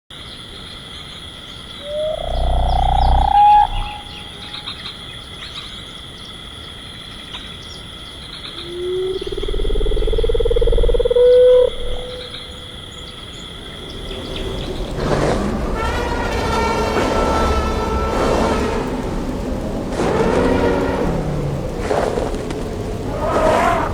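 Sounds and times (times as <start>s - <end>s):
long rising animal calls: 1.8s - 4.7s, 8.6s - 12.8s
high insect-like drone: 1.8s - 4.9s, 8.6s - 15.2s.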